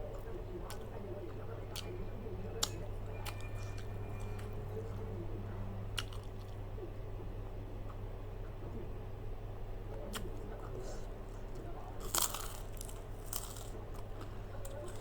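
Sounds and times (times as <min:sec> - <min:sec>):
steady low hum: 0:00.0 - 0:15.0
crunching fried food: 0:00.1 - 0:05.2, 0:05.9 - 0:06.7, 0:10.0 - 0:15.0.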